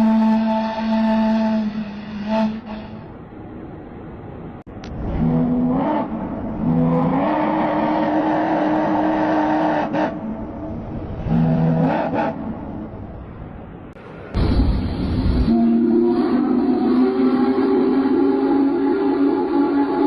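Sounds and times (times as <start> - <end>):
diesel locomotive horn: 0.0 - 3.2, 5.1 - 12.7, 15.3 - 20.0.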